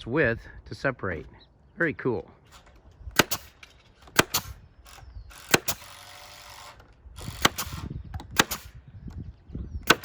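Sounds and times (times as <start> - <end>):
nail gun cracks: 2.5 - 8.8.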